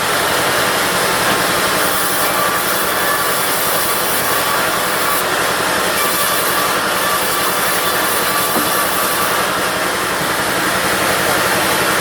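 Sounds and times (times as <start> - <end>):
diesel engine drone: 0.0 - 12.0.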